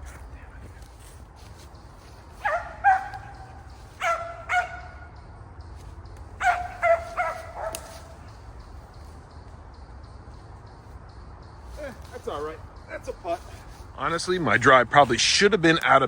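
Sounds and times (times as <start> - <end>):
dog barking: 2.4 - 5.1, 6.4 - 8.1.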